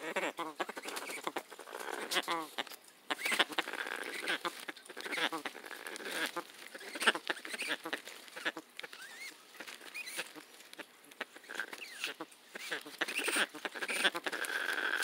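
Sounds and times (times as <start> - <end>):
parrot squeaking: 2.0 - 10.4, 11.4 - 15.0.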